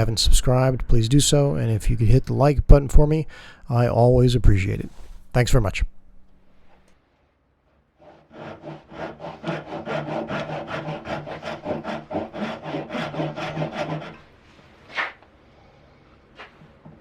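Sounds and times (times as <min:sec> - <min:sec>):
hand saw cutting wood: 0:08.0 - 0:14.3.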